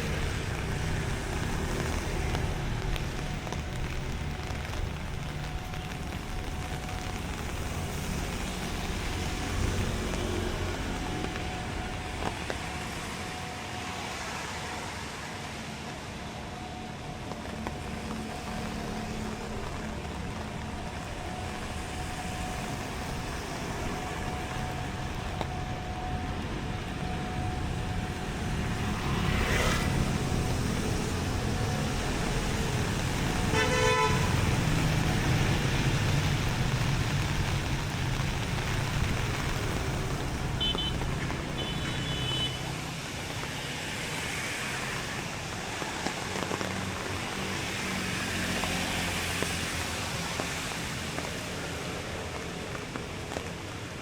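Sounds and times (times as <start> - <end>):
road traffic passing: 0.0 - 54.0
car horn toot: 33.5 - 34.3, 40.6 - 41.0, 41.6 - 42.6.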